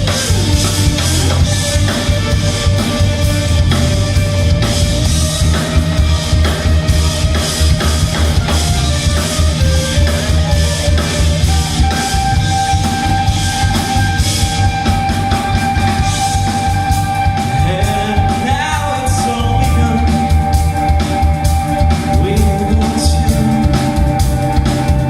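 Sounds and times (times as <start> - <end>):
rock band playing live: 0.0 - 25.0.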